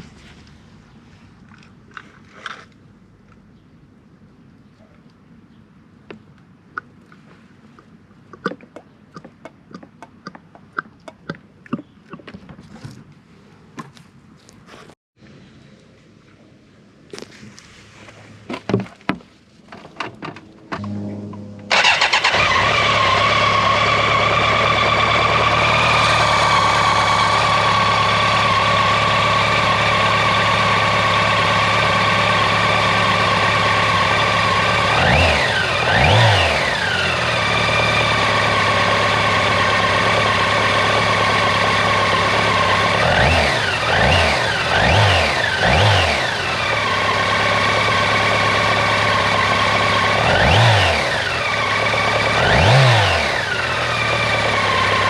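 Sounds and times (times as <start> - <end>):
motorcycle engine idling: 20.8 - 55.0.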